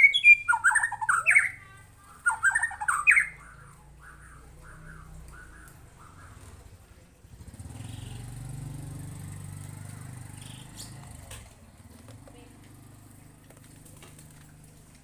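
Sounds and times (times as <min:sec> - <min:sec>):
short bird calls: 0:00.0 - 0:06.8.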